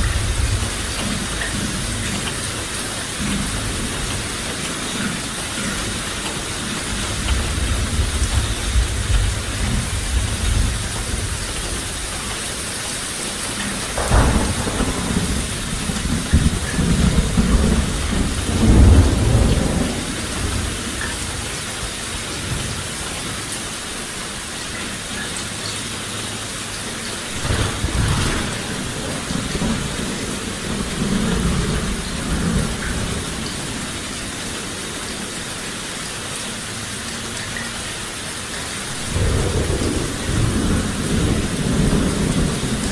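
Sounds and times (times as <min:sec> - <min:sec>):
low rolls of thunder: 0:00.0 - 0:02.5, 0:06.9 - 0:12.8, 0:13.8 - 0:21.7, 0:27.3 - 0:34.4, 0:38.9 - 0:42.9
steady rain hissing: 0:00.0 - 0:42.9.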